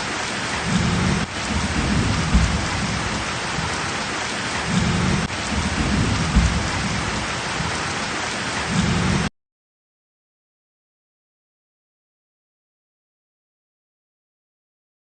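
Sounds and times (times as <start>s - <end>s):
heavy rain pouring: 0.0s - 9.3s
low thunder rumbles: 0.6s - 9.3s.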